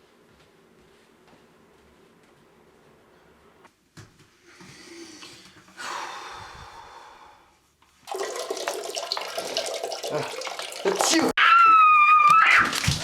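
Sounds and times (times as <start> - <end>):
water splashing into toilet bowl: 8.0 - 11.4.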